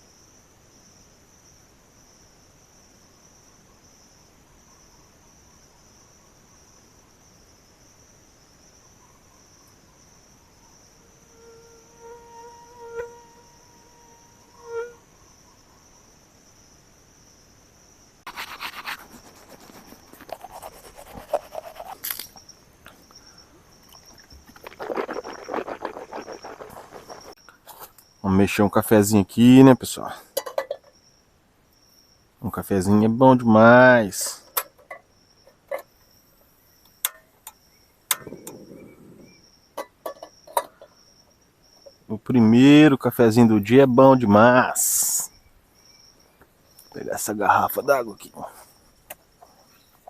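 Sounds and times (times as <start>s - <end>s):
insects trilling: 0.0s - 50.0s
scraping and rustling of handling: 24.0s - 28.0s.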